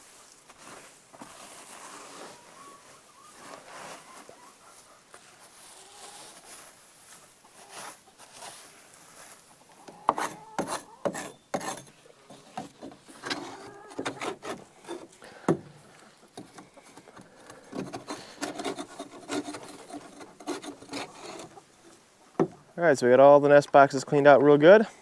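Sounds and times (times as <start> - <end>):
straw scraping against wood: 7.4 - 22.8.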